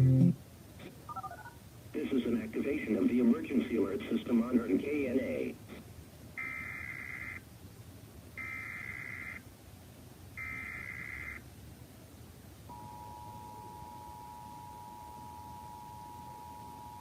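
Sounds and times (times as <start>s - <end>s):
two-tone attention signal: 12.7s - 17.0s.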